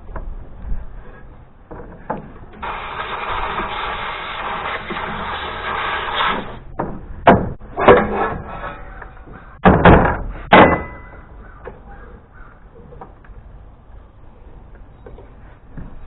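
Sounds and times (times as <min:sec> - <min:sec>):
sharp metal knocks and clanks: 0:06.7 - 0:11.8
short metallic ring: 0:10.6 - 0:11.3.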